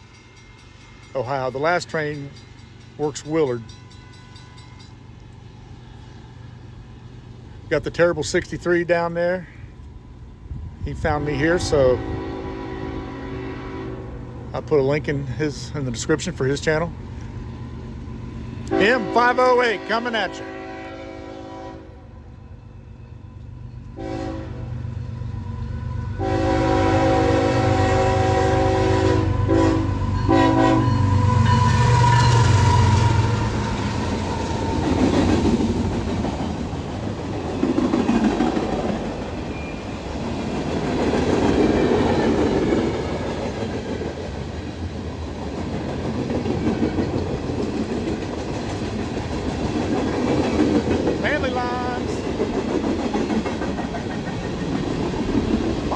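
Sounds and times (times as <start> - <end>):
train wheels clickety-clack: 0.0 - 5.4, 30.9 - 55.9
locomotive engines rumbling: 0.0 - 55.9
train air horn blasts: 11.3 - 14.2, 18.6 - 22.2, 24.0 - 24.8, 26.2 - 33.9.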